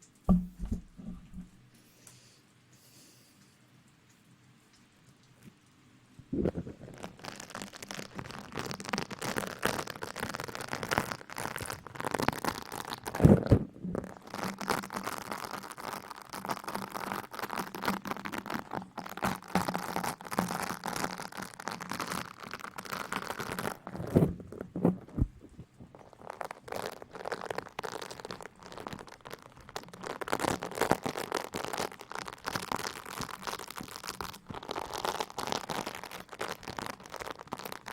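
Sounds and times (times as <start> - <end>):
rustling and crinkling on microphone: 0.0 - 1.7, 4.7 - 37.9
heavy thump: 0.3 - 1.5.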